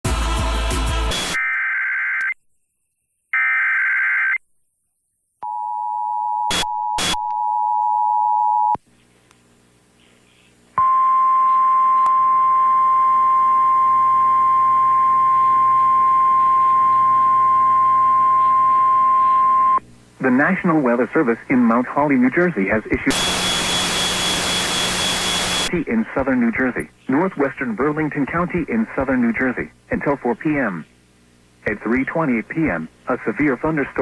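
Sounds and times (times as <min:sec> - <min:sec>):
faint hum: 0:05.4 - 0:34.0
two-tone attention signal: 0:10.8 - 0:19.8
screeching data bursts: 0:14.8 - 0:19.8, 0:23.1 - 0:25.7.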